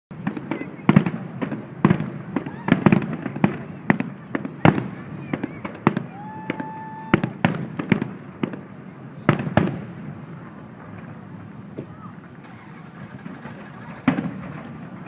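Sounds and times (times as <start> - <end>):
fireworks bangs and pops: 0.1 - 15.0
firework whistle: 5.3 - 7.6.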